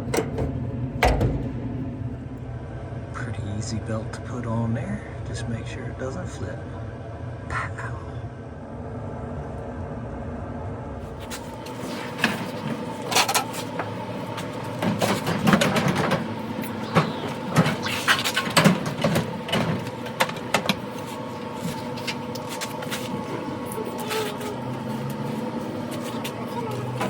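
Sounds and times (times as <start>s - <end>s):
steady hum: 0.0s - 27.0s
tools knocking on metal cabinet: 0.1s - 1.6s.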